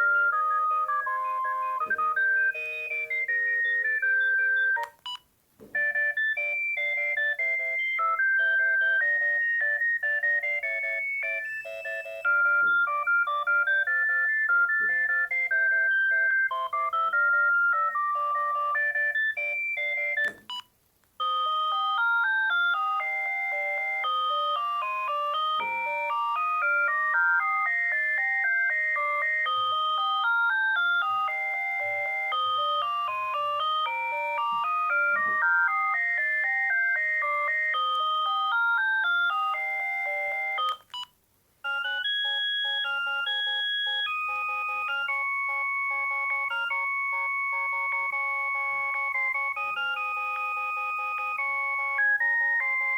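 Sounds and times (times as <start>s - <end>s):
electronic phone ringtones: 0.0s - 5.2s, 5.8s - 52.9s
phone click: 20.2s - 20.7s.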